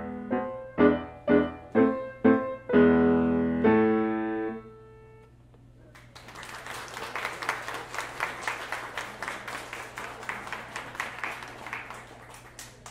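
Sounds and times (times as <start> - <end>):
piano note: 0.0 - 5.3
audience clapping: 5.9 - 12.9.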